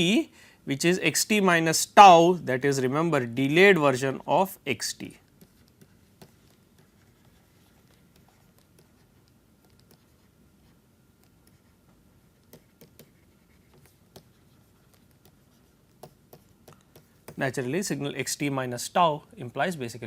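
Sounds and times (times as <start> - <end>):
pen tapping: 5.3 - 10.3, 11.2 - 17.4
pen scratching on paper: 5.3 - 17.4.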